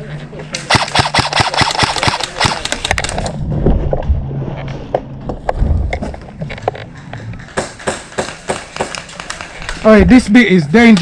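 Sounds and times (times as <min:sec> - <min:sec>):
airsoft gunfire: 0:00.7 - 0:03.2, 0:07.6 - 0:09.6
low rumble: 0:03.1 - 0:07.5.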